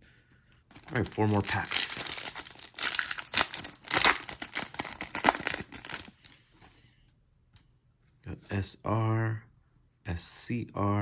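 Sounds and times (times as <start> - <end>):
wrapper crinkling and tearing: 0.7 - 6.4.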